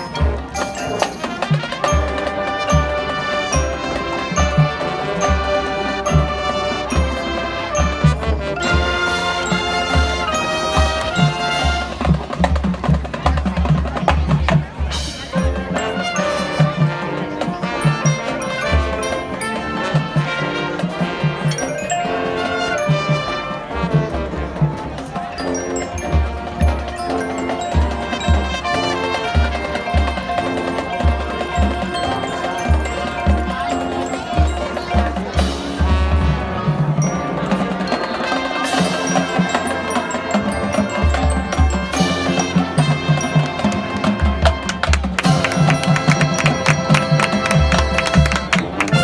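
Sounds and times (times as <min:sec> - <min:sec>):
brass section holding chords: 0:00.0 - 0:12.3, 0:14.9 - 0:49.0
marching band playing: 0:00.0 - 0:49.0
steady drum beat: 0:00.0 - 0:49.0.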